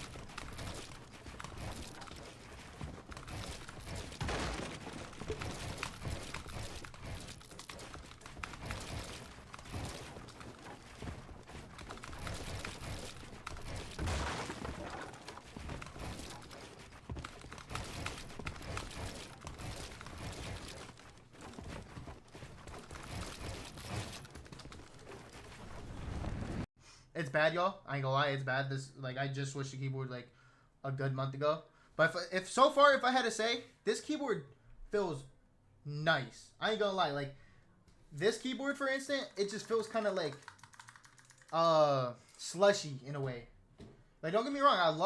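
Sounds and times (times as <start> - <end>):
keyboard keys clicking: 39.6 - 41.6.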